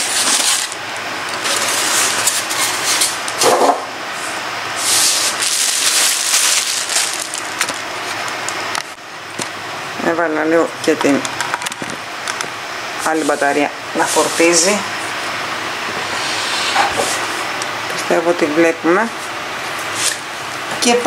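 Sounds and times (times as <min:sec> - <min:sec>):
rustling handling noise: 0:00.0 - 0:03.4, 0:04.8 - 0:08.9.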